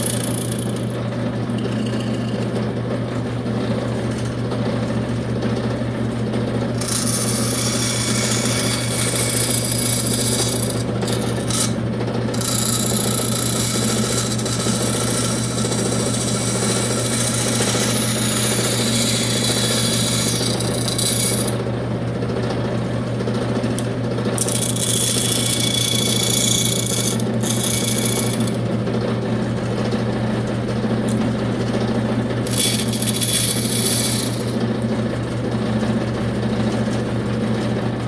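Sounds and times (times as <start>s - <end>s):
power tool motor humming: 0.0s - 1.0s, 6.7s - 21.6s, 23.8s - 28.6s, 32.4s - 34.6s
tool rasping against wood: 0.0s - 2.6s, 6.7s - 21.7s, 23.8s - 28.6s, 32.3s - 34.7s.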